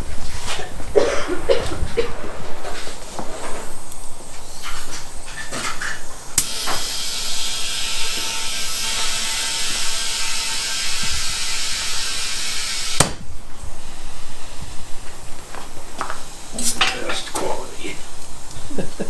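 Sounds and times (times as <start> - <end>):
compressed air hissing into tire: 6.3 - 16.8.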